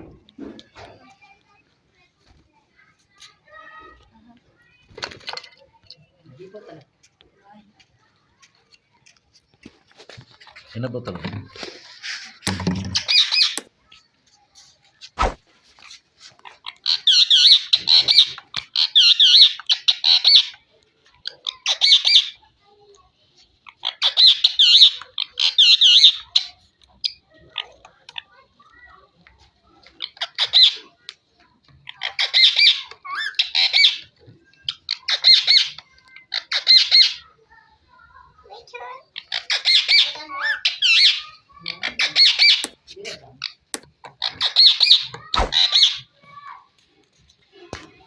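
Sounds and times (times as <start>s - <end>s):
parakeet squawking: 39.2s - 42.8s, 44.2s - 46.1s.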